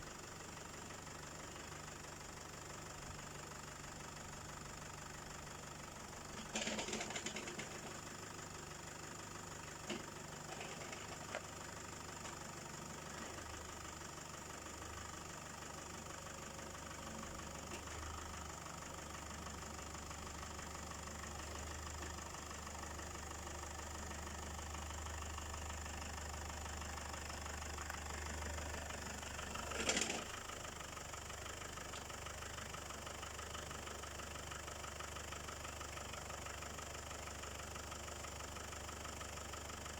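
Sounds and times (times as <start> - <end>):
engine idling: 0.0 - 39.9
clatter: 6.2 - 14.0, 27.2 - 33.6.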